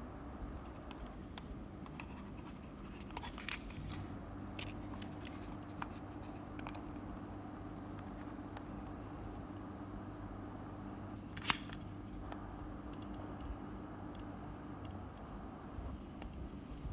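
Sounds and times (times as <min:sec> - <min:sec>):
low steady hum: 0:00.0 - 0:16.9
computer mouse clicks: 0:04.6 - 0:07.0, 0:11.4 - 0:13.5.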